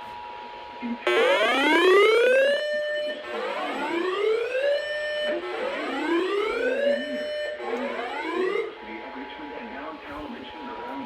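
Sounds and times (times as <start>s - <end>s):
electronic whooping alarm siren: 1.1s - 8.8s.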